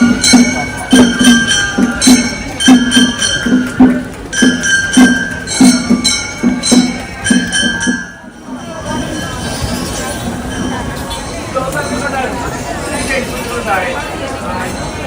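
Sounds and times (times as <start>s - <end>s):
drum beats: 0.0s - 9.8s.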